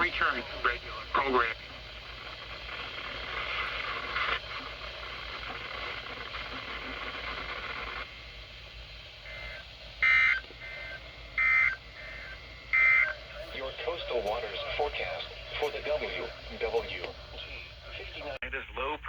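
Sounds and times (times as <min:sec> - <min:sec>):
radio static hiss: 0:00.0 - 0:19.0
digital data tone bursts: 0:09.2 - 0:17.7.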